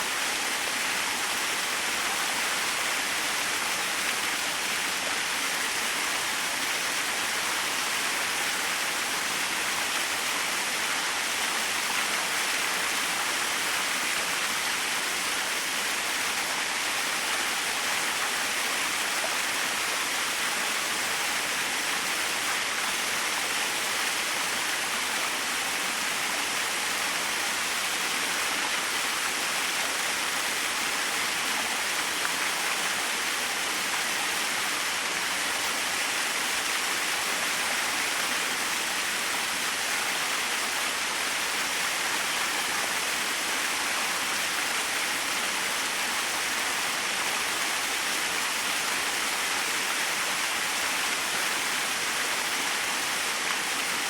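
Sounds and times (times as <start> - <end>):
small waterfall splashing: 0.0 - 54.0.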